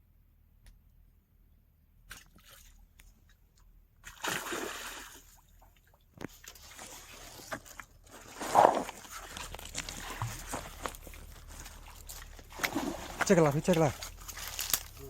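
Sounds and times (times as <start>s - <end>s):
water splashing: 4.0s - 5.7s, 6.3s - 15.0s.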